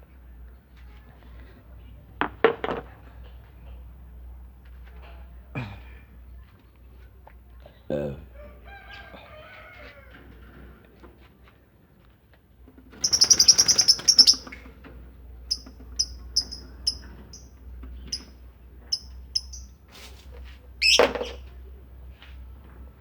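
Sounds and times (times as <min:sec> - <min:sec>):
harsh bird call: 0:13.0 - 0:14.6, 0:15.5 - 0:17.0
lovebirds chirping: 0:13.0 - 0:14.7, 0:15.5 - 0:19.8, 0:20.8 - 0:21.4.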